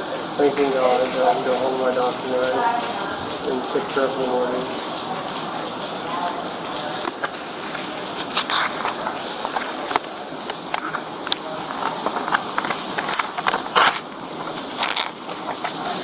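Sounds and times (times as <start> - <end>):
steady outdoor hiss: 0.0 - 16.0.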